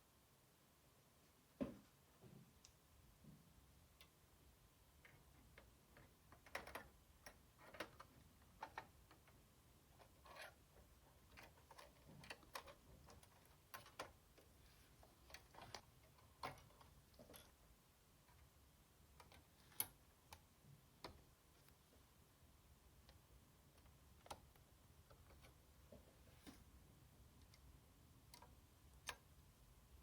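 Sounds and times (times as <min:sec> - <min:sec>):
light clicks and taps of parts: 0:05.0 - 0:22.0, 0:23.0 - 0:29.5.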